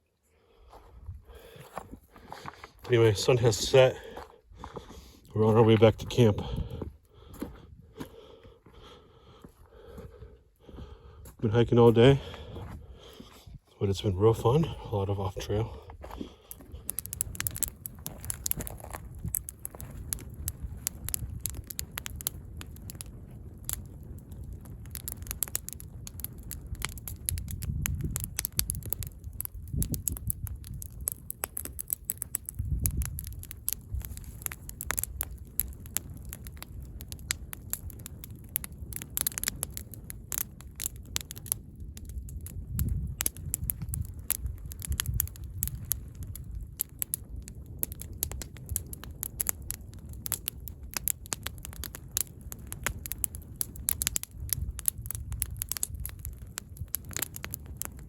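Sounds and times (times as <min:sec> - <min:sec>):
footsteps crunching on gravel: 0:00.6 - 0:13.6, 0:14.5 - 0:17.0, 0:18.0 - 0:20.0
microphone wind rumble: 0:00.6 - 0:58.0.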